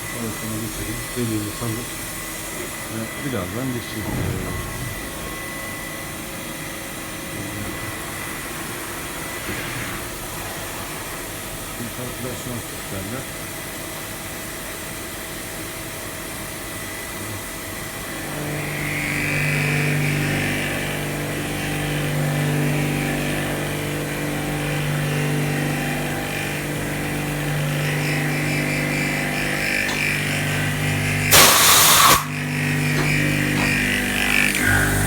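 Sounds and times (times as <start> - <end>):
milling machine hum and whine: 0.0 - 35.0
loud rush of noise: 3.8 - 6.5.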